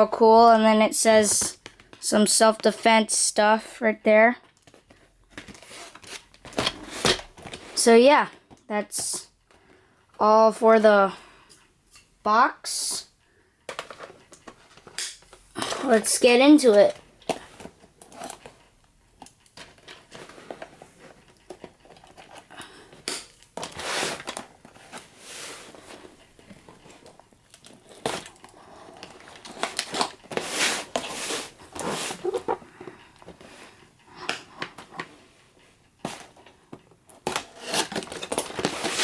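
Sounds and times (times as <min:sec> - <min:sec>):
cardboard tearing and rustling: 0:27.6 - 0:28.4, 0:29.2 - 0:32.6, 0:37.2 - 0:39.0.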